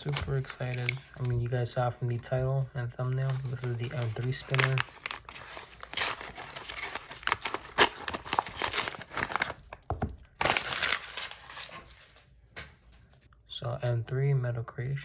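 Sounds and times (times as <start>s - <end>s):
packaging crinkling: 3.1s - 12.2s.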